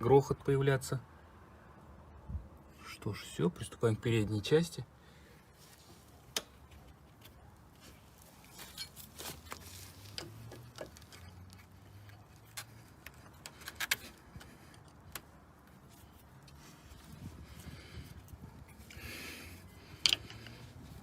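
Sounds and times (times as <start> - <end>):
metallic clicks of tools: 20.0 - 20.6.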